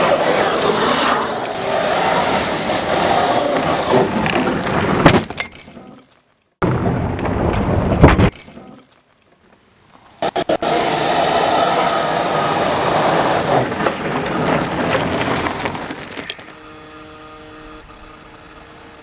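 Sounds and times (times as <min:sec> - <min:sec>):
tyres scrabbling on dirt: 0:08.3 - 0:16.6
rc car motor and gear whine: 0:10.2 - 0:19.0.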